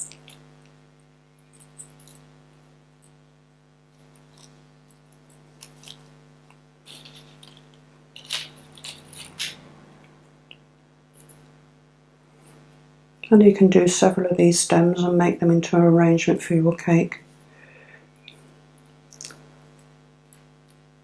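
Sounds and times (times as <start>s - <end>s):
low electrical hum: 0.0s - 21.0s
tape crinkling and clicking: 4.0s - 10.6s.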